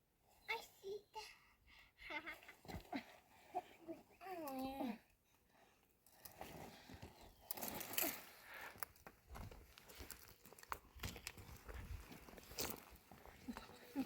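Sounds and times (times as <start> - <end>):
faint rustling and crunching: 6.1 - 14.0.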